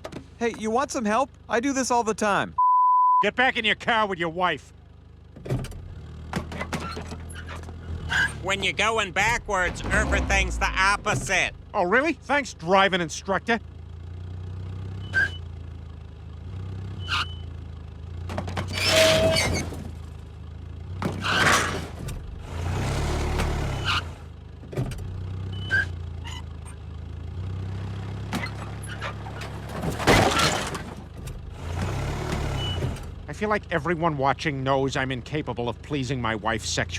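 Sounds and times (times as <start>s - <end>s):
vehicle engine running: 0.0s - 2.6s, 3.2s - 36.9s
loud crashing and scraping: 9.2s - 11.6s, 18.3s - 20.1s, 21.0s - 24.2s, 28.3s - 33.2s.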